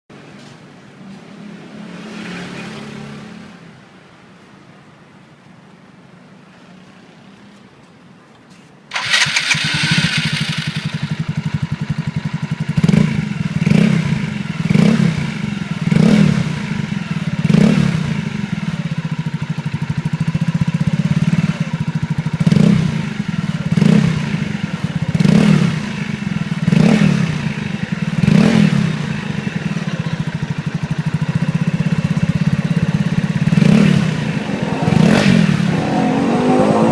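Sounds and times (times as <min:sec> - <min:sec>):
scooter throttle blips: 0:08.9 - 0:11.9
scooter engine starting and idling: 0:08.9 - 0:35.7.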